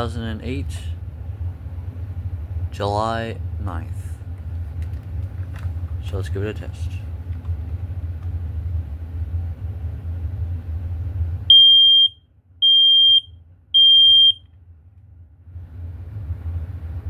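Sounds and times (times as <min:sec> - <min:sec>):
low background rumble: 0:00.0 - 0:17.0
smoke alarm high-pitched beeps: 0:11.5 - 0:14.4.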